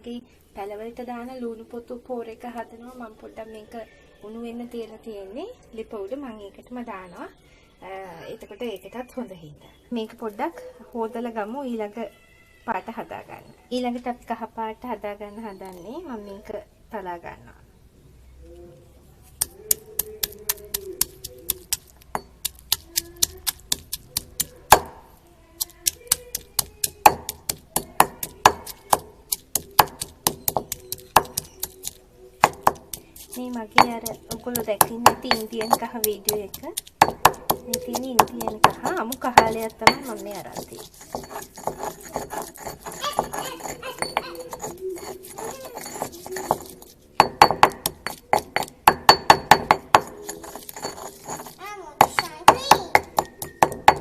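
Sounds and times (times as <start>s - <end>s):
pounding with sharp knocks: 19.4s - 54.0s
utensil clinking on hard vessel: 25.8s - 54.0s.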